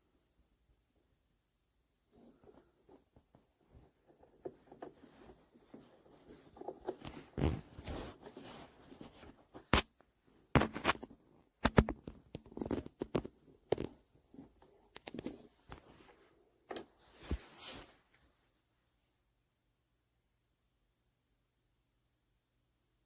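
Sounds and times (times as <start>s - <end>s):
rustling: 1.9s - 18.6s.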